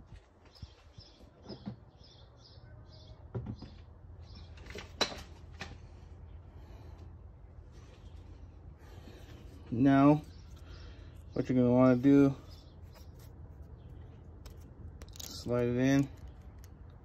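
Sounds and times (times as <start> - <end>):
small bird chirping: 9.8 - 16.6
parts clicking and knocking: 14.1 - 17.0.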